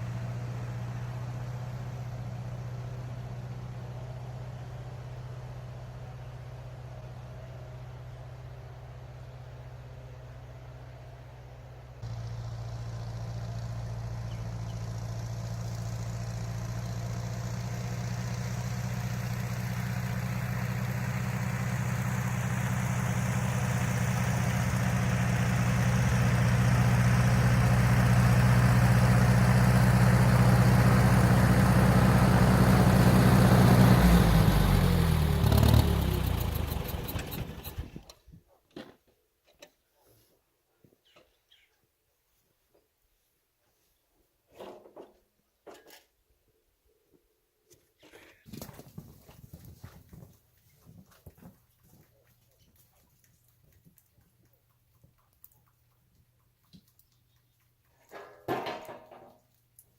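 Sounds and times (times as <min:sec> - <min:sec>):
tractor engine idling: 0:12.0 - 0:38.1
tractor engine shutting off: 0:12.0 - 0:38.2.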